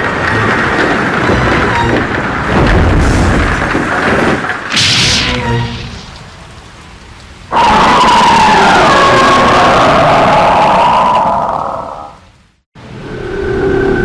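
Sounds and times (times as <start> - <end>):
deep rumbling booms: 0.4 - 6.8
short hissing blast: 4.7 - 6.6.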